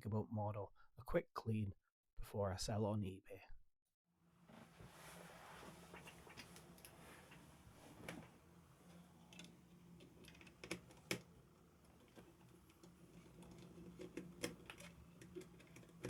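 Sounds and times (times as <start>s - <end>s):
small parts clicking: 8.0s - 16.0s.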